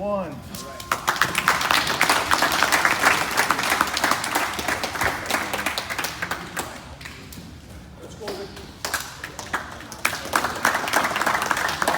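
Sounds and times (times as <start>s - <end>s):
audience applauding: 0.8s - 6.9s, 8.8s - 11.9s.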